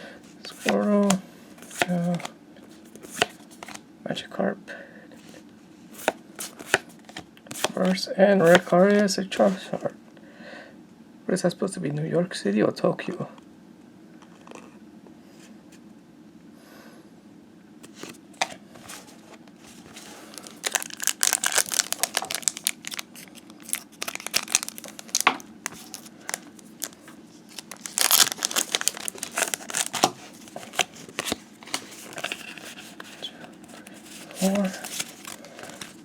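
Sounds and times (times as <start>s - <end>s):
foil wrapper tearing and crinkling: 19.7s - 33.2s, 33.8s - 36.0s.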